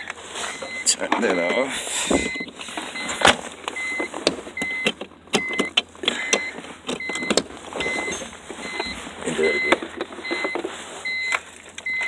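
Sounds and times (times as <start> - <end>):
car warning chime beeping: 0.0 - 12.0.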